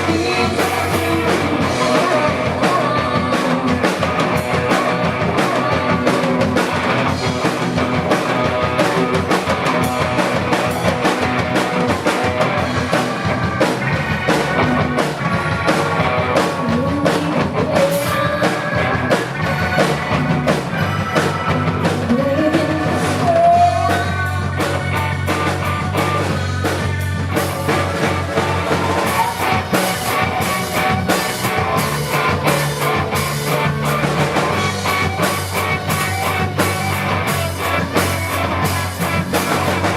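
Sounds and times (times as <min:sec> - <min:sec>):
person singing: 0:00.0 - 0:11.2, 0:15.3 - 0:25.4
drum kit: 0:00.0 - 0:39.9
electric guitar: 0:00.0 - 0:39.9
live rock band playing: 0:00.0 - 0:39.9.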